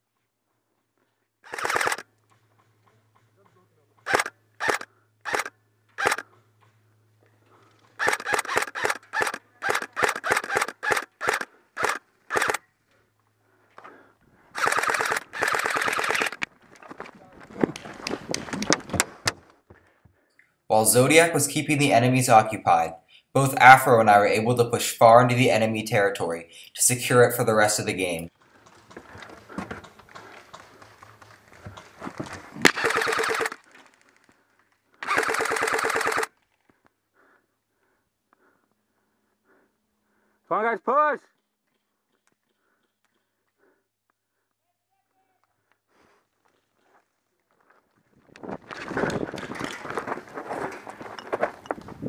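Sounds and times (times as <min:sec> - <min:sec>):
airsoft gun firing: 0:01.5 - 0:02.0, 0:08.0 - 0:12.6, 0:14.6 - 0:16.4, 0:32.6 - 0:33.6, 0:35.0 - 0:36.3
footsteps: 0:14.6 - 0:20.2, 0:28.3 - 0:32.9, 0:46.4 - 0:52.0.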